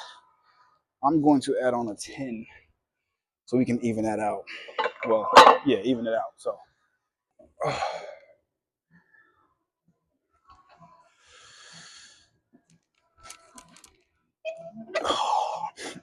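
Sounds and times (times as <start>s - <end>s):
weight plates clinking and scraping: 4.6s - 5.8s
metal clanks: 4.7s - 5.7s.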